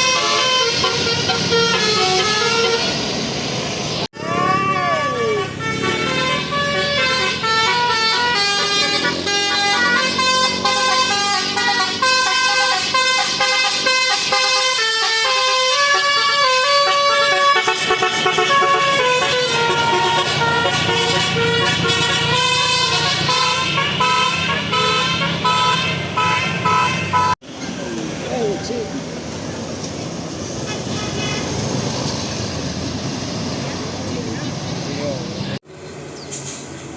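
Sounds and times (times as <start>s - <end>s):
musical bus air horn: 0.0s - 3.0s, 4.2s - 27.4s, 30.6s - 31.6s.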